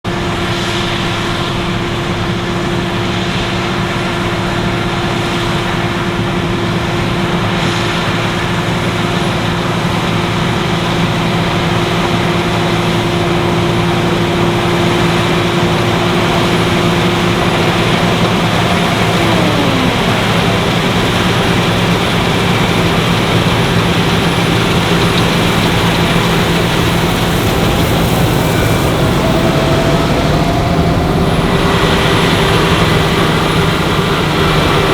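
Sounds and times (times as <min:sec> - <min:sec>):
combine harvester engine drone: 0:00.0 - 0:34.9
machinery whining tones: 0:09.0 - 0:34.9.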